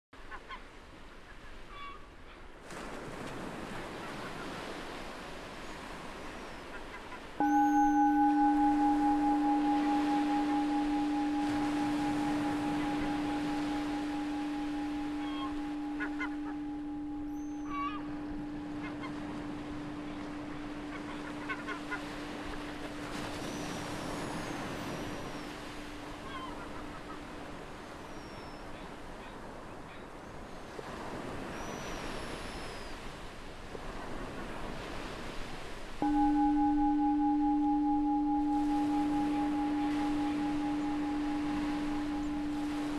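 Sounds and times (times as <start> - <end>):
ocean surf washing onto beach: 2.6 - 6.4, 7.2 - 28.0, 33.6 - 42.9
seagull call: 7.0 - 27.4
meditation bell ringing: 7.4 - 28.5, 36.0 - 42.9.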